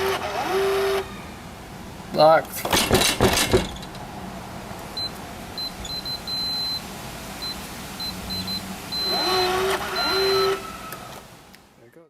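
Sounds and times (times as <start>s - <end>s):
keypad beeps: 5.0s - 6.8s, 10.0s - 10.6s
lock motor hum: 9.0s - 11.2s.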